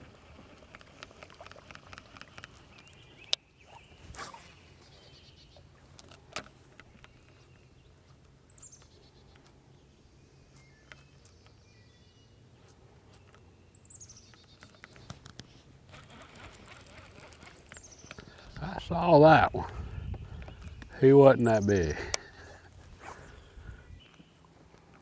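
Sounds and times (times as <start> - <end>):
soft bird chirps: 2.3 - 5.8, 6.8 - 15.2, 16.8 - 24.5.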